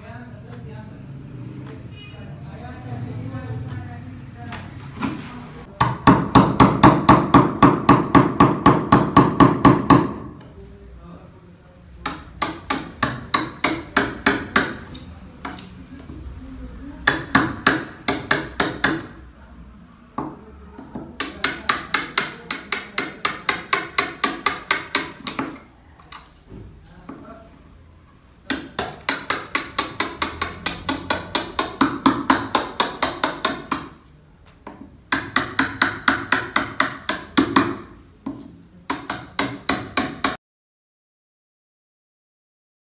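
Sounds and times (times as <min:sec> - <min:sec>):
hammer tapping on wood: 0:05.8 - 0:10.5, 0:12.0 - 0:16.2, 0:17.0 - 0:19.2, 0:20.2 - 0:25.6, 0:28.5 - 0:40.4.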